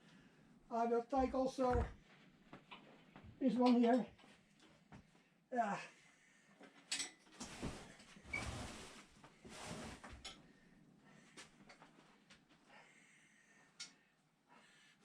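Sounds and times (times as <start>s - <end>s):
tools clicking and knocking: 6.8s - 7.5s
scraping and rustling: 7.4s - 10.2s.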